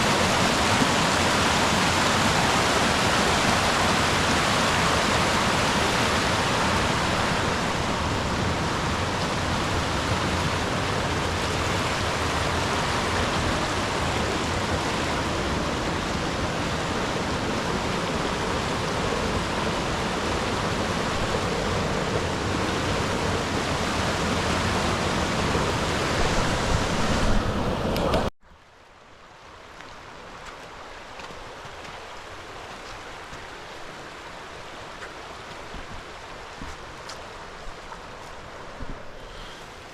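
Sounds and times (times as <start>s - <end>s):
waterfall roaring: 0.0s - 28.3s.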